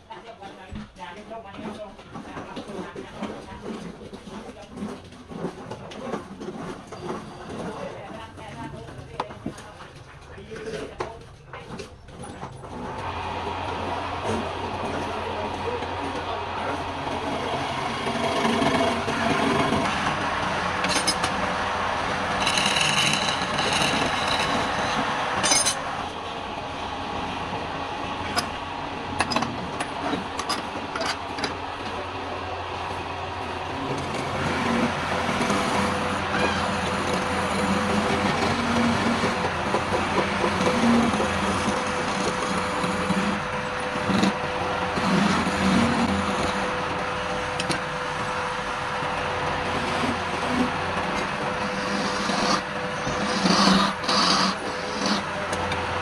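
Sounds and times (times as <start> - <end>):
turning tool scraping wood: 1.6 - 9.9, 14.2 - 26.2, 32.8 - 48.4, 49.4 - 56.0
wood lathe humming: 12.7 - 56.0.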